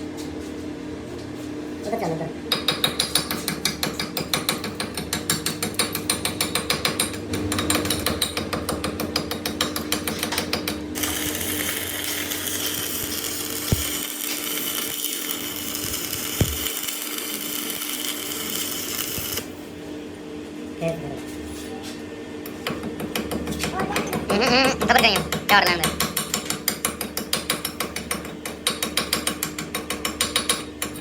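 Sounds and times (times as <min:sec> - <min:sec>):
electric welding arc crackling: 0:11.0 - 0:19.5.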